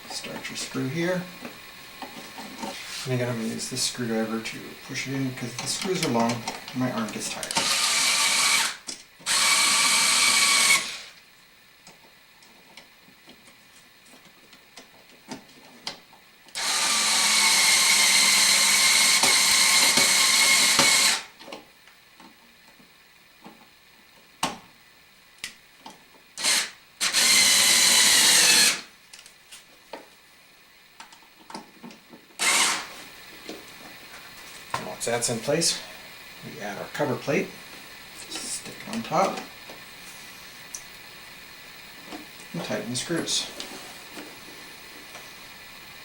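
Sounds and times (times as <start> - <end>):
power screwdriver running: 7.1 - 11.2, 16.5 - 21.3, 26.4 - 28.9, 32.4 - 33.0.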